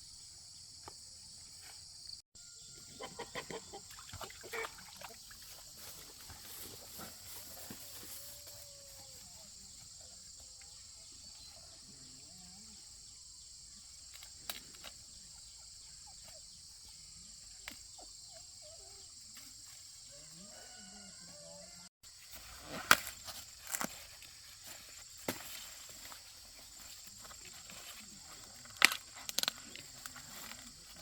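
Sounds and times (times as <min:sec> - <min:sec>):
farm animals calling: 0:02.6 - 0:10.3.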